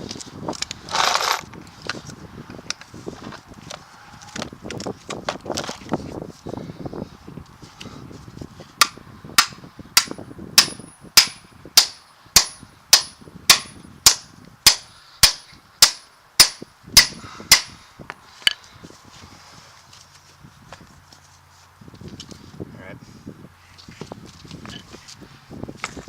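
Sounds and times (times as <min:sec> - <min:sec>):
hammer blows on steel: 0:08.8 - 0:17.8.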